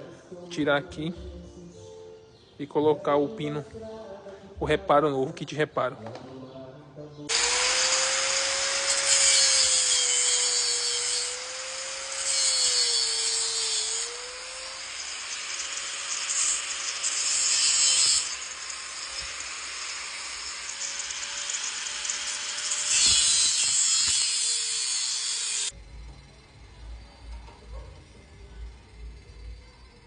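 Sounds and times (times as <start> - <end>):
power tool whining into steel: 7.3 - 25.7.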